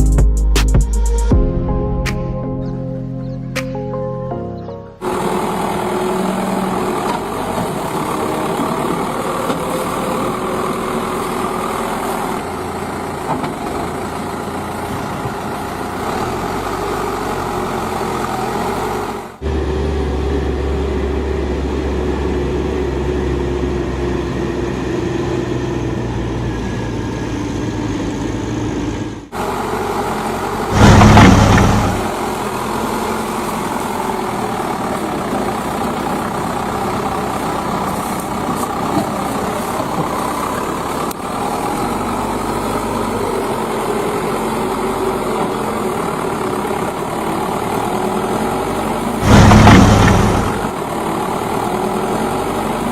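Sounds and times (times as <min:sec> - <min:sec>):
diesel engines running: 0:00.0 - 0:52.9
loud noisy burst: 0:30.7 - 0:32.2, 0:49.2 - 0:50.8.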